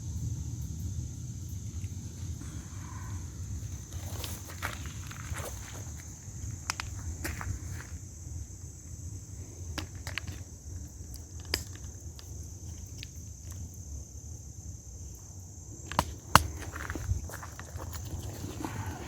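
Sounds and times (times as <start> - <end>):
insect chorus trilling: 0.0 - 19.0.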